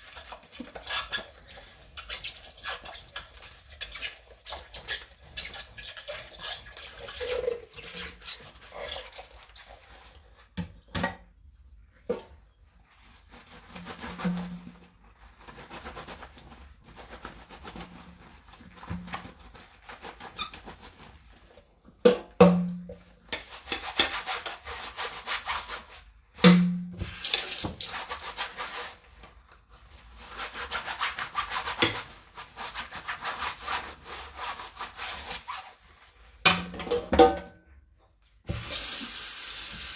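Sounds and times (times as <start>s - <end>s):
dishes being scrubbed: 0.0s - 10.9s, 12.0s - 21.6s, 22.3s - 37.4s
dishes knocking and clinking: 36.5s - 37.6s.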